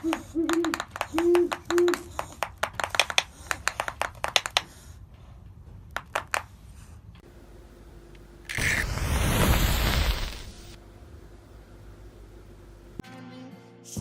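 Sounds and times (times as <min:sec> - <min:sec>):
owl hooting low: 0:00.0 - 0:02.5
owl bill snapping clicks: 0:00.0 - 0:04.7.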